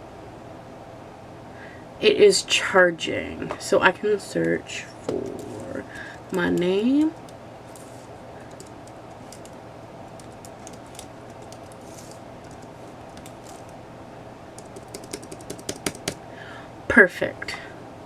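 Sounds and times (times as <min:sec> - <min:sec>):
steady low hum: 0:00.0 - 0:18.0
keyboard keystrokes: 0:08.5 - 0:13.7, 0:14.6 - 0:16.2.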